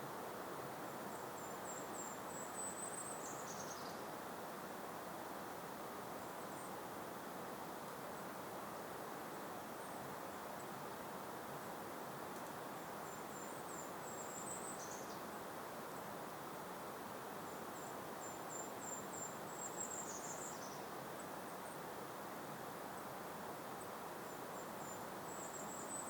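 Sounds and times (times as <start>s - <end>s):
steady breeze: 0.0s - 26.0s
songbird singing: 0.9s - 4.2s, 12.3s - 16.2s, 17.4s - 22.0s, 23.7s - 26.0s.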